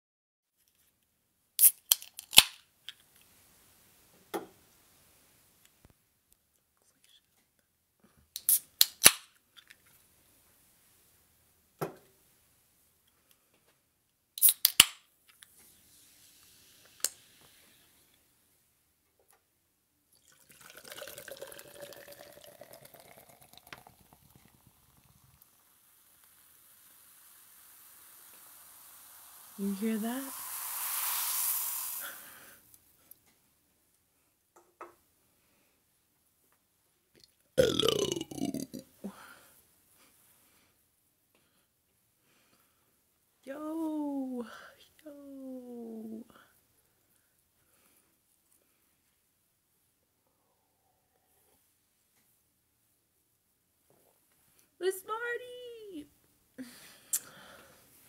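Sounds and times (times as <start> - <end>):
sharp clicks and snaps: 8.4 - 9.8, 14.4 - 15.5
water pouring with splashes: 20.2 - 25.5, 26.5 - 32.5.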